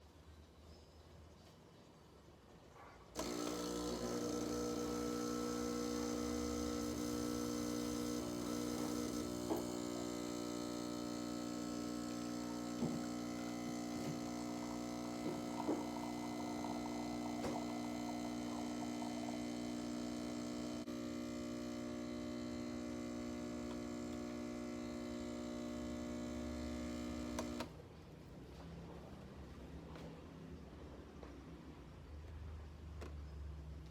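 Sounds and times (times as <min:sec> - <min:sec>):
espresso machine pump humming: 0:03.2 - 0:27.7.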